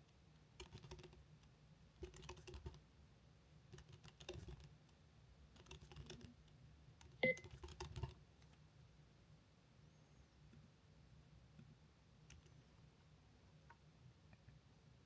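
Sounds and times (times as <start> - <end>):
fast typing on keyboard: 0.6 - 1.2, 2.0 - 2.8, 3.7 - 4.8, 5.5 - 6.4, 7.0 - 8.2.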